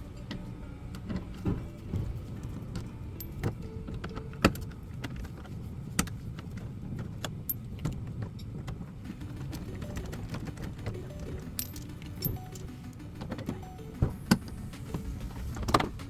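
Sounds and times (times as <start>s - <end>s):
low steady rumble: 0.0s - 16.0s.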